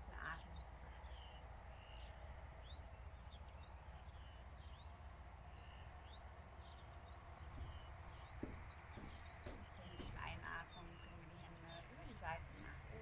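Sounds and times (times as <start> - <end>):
birds chirping faintly: 0.0 - 13.0.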